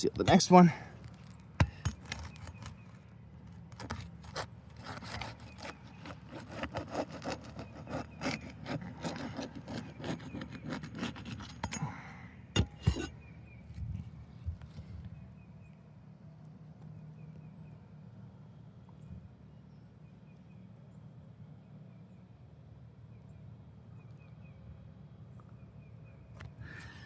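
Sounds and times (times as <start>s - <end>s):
tool scraping roof shingle: 1.0s - 13.2s.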